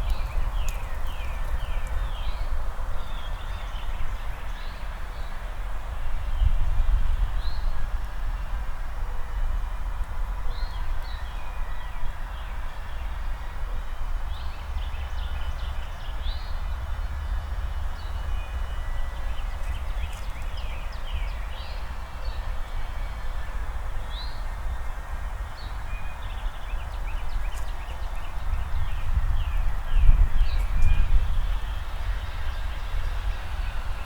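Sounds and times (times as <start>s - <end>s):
songbirds chirping: 0.0s - 5.5s, 14.3s - 34.0s.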